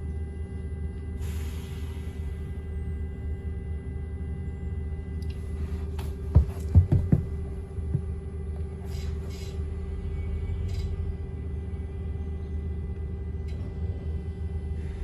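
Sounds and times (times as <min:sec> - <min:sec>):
bus engine rumble: 0:00.0 - 0:15.0
knocks: 0:06.0 - 0:08.1.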